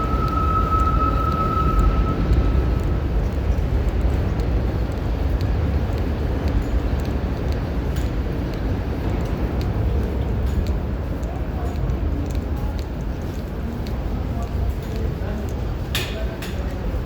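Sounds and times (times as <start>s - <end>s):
high whine: 0.0s - 4.0s
subway train rumbling: 0.0s - 17.0s.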